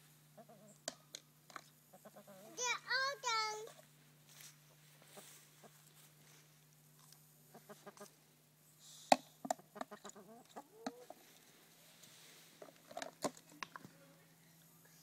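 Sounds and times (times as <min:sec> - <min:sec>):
chickens clucking: 0:00.3 - 0:00.9, 0:01.9 - 0:02.7, 0:04.7 - 0:06.0, 0:07.4 - 0:08.2, 0:09.4 - 0:11.5.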